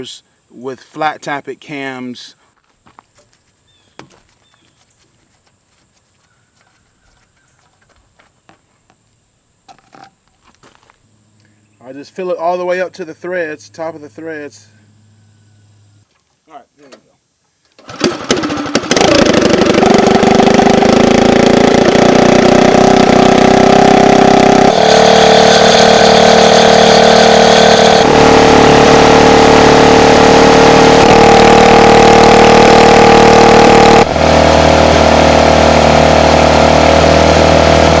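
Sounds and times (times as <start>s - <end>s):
engine starting and running: 17.7s - 38.0s.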